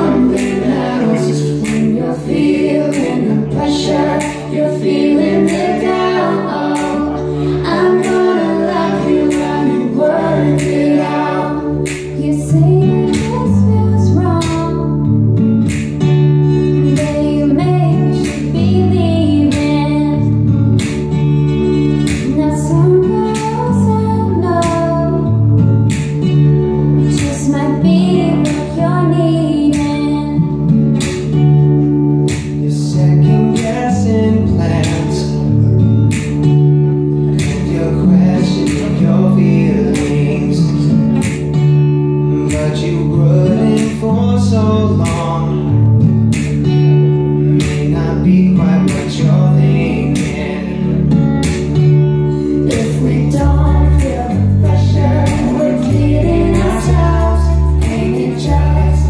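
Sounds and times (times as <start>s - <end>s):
person singing: 0.0s - 14.9s, 37.4s - 40.9s, 52.6s - 59.0s
guitar playing: 0.0s - 59.0s.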